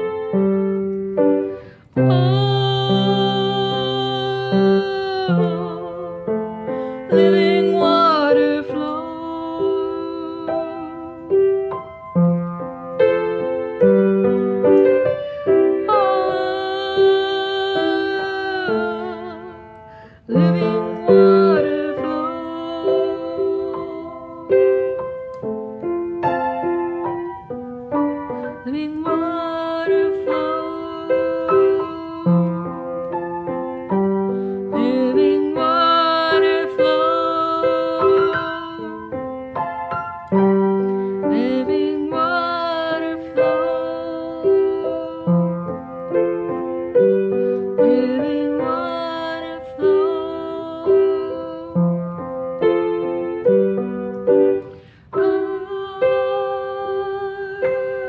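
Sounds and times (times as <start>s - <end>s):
slow solo piano: 0.0s - 58.0s.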